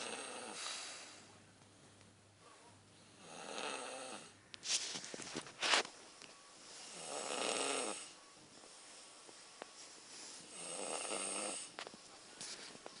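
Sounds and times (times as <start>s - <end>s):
loud snoring: 0.0s - 0.8s, 3.2s - 4.4s, 6.8s - 8.2s, 10.5s - 11.8s
quiet breathing: 0.0s - 5.2s, 6.3s - 13.0s.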